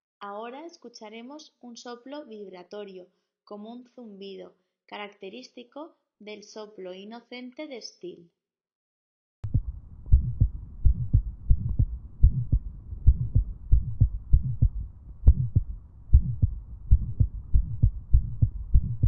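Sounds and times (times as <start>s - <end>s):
heartbeat with buzzing murmur: 9.4s - 19.0s.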